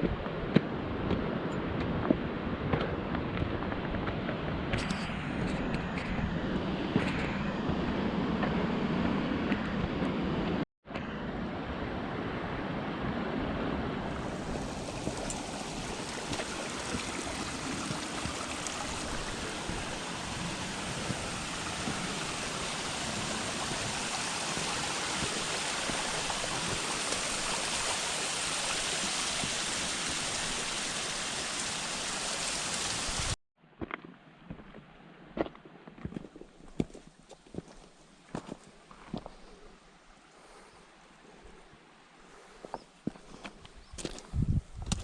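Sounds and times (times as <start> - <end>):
stream rushing: 11.4 - 33.4.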